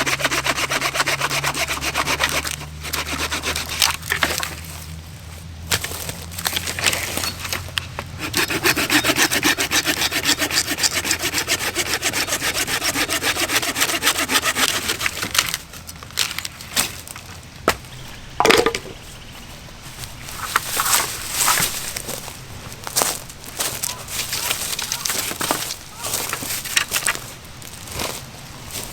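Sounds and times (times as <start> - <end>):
hand saw cutting wood: 0.0 - 4.7, 5.7 - 15.6, 20.4 - 22.1, 24.1 - 27.2.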